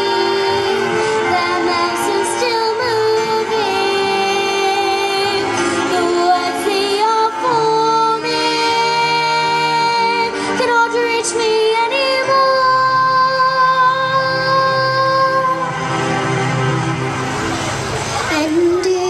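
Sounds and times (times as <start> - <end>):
sustained musical accompaniment: 0.0 - 19.0.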